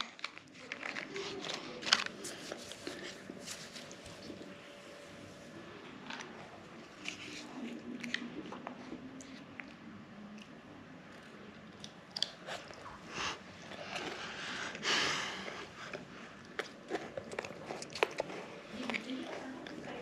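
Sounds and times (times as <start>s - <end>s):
eating crunches: 0.0s - 4.6s, 5.8s - 20.0s.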